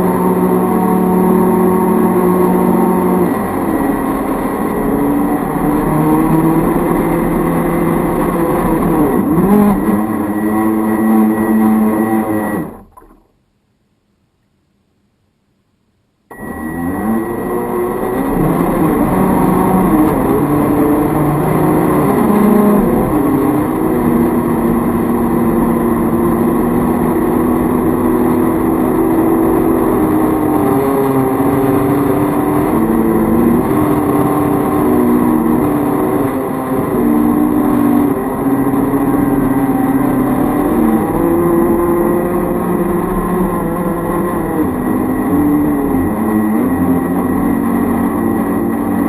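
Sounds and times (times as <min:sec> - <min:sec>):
electric motor hum: 0:00.0 - 0:13.2, 0:16.3 - 0:49.0
steady rush of noise: 0:00.0 - 0:49.0.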